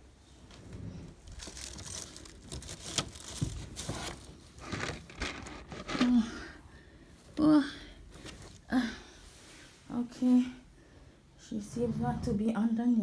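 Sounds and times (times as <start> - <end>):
rustling and crinkling: 0.3 - 9.7.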